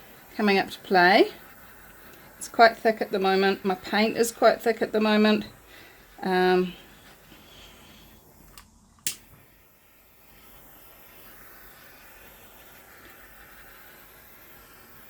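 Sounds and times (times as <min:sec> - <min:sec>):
faint hiss: 0:00.0 - 0:15.0
sharp click: 0:08.5 - 0:09.4.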